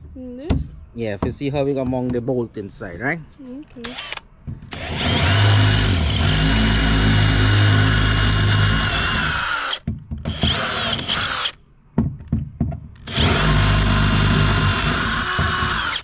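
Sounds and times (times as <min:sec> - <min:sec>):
power drill drilling: 0:03.8 - 0:11.6, 0:13.0 - 0:16.0.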